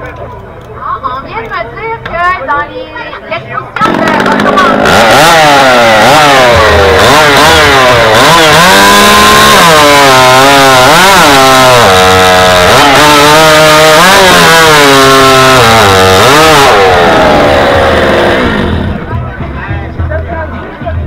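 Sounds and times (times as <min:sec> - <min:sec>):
chainsaw cutting through log: 0:03.8 - 0:19.1.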